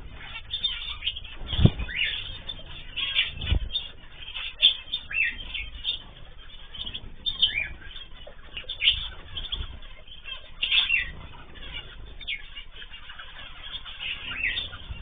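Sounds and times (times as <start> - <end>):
birds chirping and calling: 0.0 - 15.0
wing flapping: 0.0 - 15.0
low thumps: 1.2 - 4.1.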